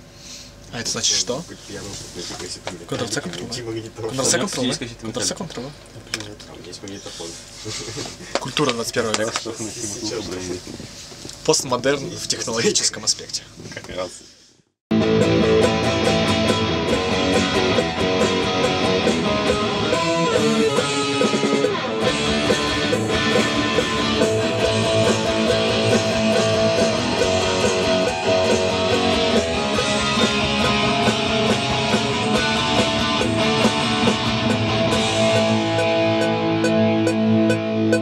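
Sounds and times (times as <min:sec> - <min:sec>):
indie rock with electric guitars: 0:14.9 - 0:38.0.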